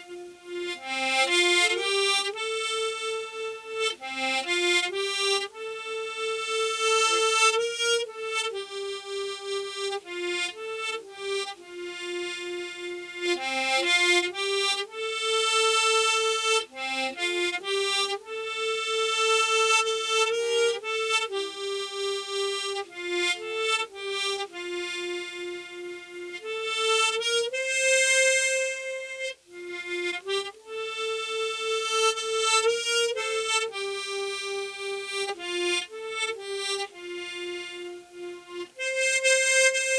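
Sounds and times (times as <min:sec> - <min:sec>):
solo harmonica melody: 0:00.0 - 0:39.9.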